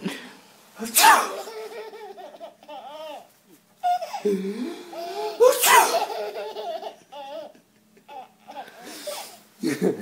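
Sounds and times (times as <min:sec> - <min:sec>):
man sneezing: 0:00.8 - 0:01.5, 0:05.4 - 0:06.1
baby laughing: 0:01.0 - 0:09.4.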